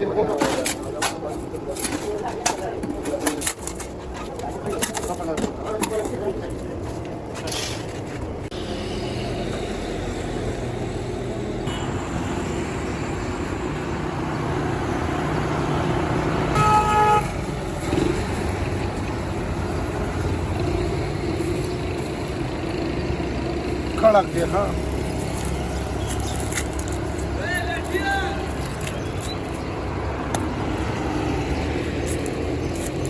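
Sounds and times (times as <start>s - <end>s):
street traffic: 0.0s - 33.0s
vehicle horn honking: 16.6s - 17.4s.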